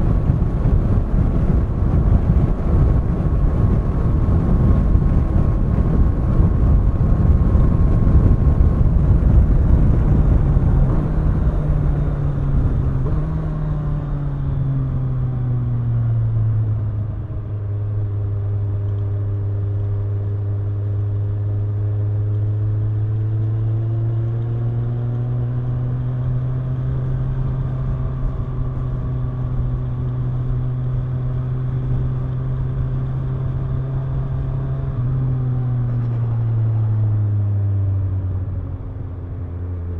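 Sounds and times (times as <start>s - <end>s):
wind noise: 0.0s - 19.3s
motorcycle engine and exhaust: 0.0s - 39.9s.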